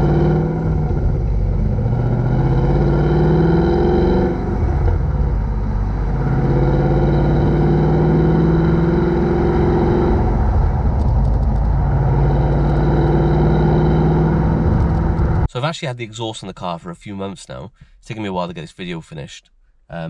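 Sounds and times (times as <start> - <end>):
deep exhaust drone: 0.0 - 15.5.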